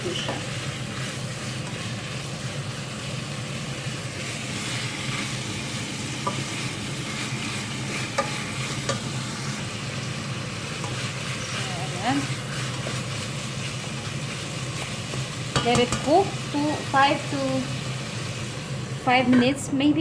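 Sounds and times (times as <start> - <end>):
chicken sizzling in a pan: 0.0 - 19.9
utensil clicking against pan: 8.1 - 9.0, 15.1 - 16.2.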